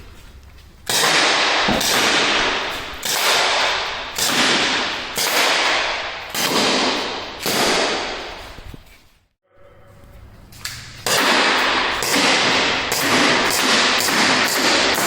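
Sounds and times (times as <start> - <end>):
air pistol shots with echo: 0.9 - 8.5, 11.0 - 15.0.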